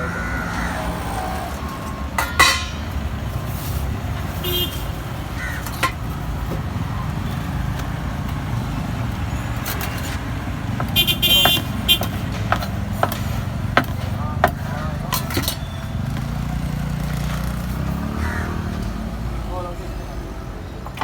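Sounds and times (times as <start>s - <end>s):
passing traffic rumble: 0.0s - 21.0s
sharp metallic clanks: 1.9s - 3.4s.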